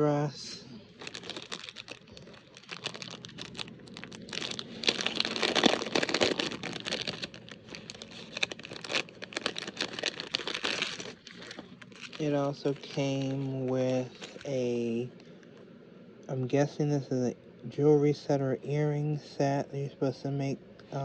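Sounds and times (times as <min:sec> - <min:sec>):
packaging crinkling and rustling: 0:00.8 - 0:14.7.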